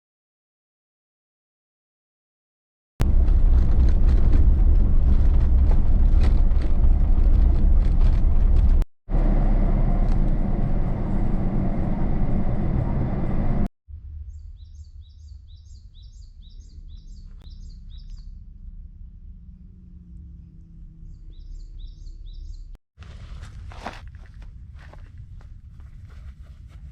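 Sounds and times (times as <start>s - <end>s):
vehicle driving on dirt track: 3.0s - 13.7s
small bird chirping: 14.3s - 18.4s, 21.0s - 22.8s.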